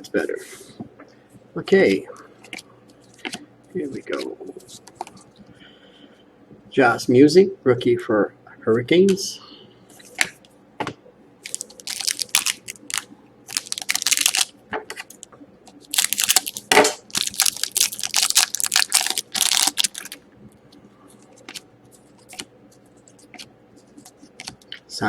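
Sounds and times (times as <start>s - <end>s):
foil wrapper crinkling and tearing: 11.4s - 14.5s, 15.8s - 20.2s
cards clicking and rustling: 11.5s - 20.2s.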